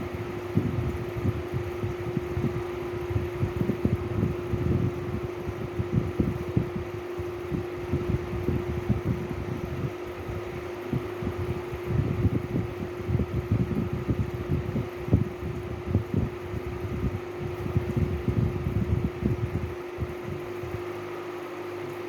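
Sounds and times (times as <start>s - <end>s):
electric fan humming: 0.0s - 22.0s.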